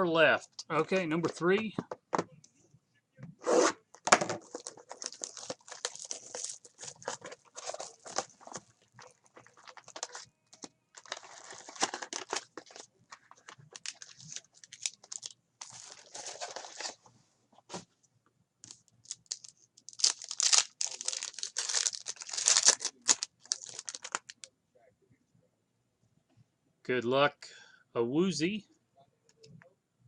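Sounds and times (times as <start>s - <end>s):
plastic wrapping crinkling and tearing: 4.4s - 17.0s, 18.6s - 24.5s.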